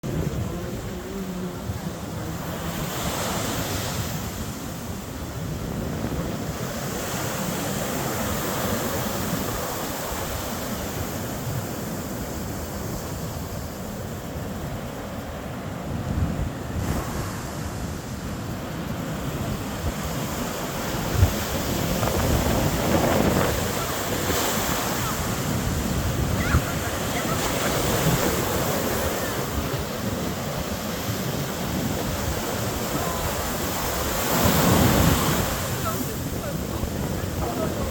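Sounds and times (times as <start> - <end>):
sea waves breaking on beach: 0.0 - 37.9
wind buffeting microphone: 0.0 - 37.9.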